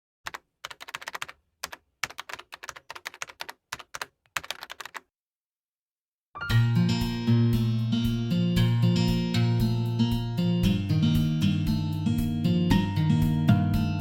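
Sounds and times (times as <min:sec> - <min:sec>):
keyboard typing: 0:00.2 - 0:05.1
guitar music: 0:06.5 - 0:14.0.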